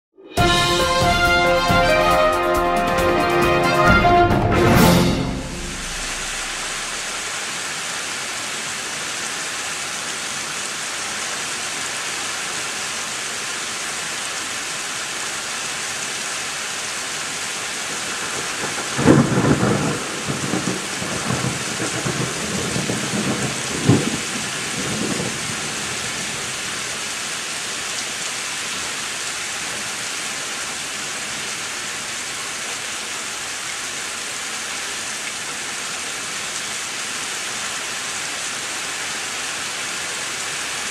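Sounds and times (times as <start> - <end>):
heavy rain: 0.4 - 40.9
thunder rumbling: 4.5 - 7.3, 18.0 - 26.5.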